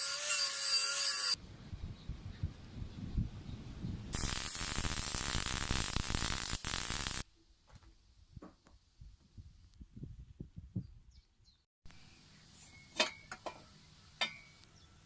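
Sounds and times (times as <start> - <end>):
loud steady hiss: 4.2 - 7.2.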